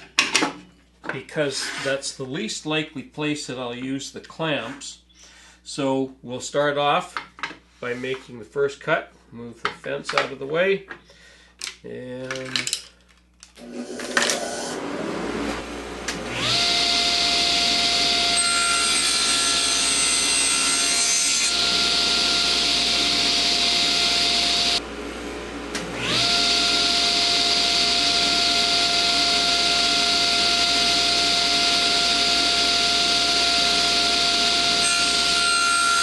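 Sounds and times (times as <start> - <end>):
saw blade cutting board: 1.5 - 2.0, 16.4 - 24.8, 26.0 - 36.0
table saw motor whining: 13.6 - 24.8, 25.7 - 36.0.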